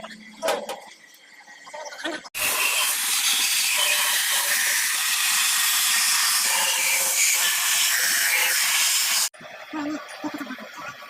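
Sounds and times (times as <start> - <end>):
high-pressure jet hissing: 2.4 - 9.3.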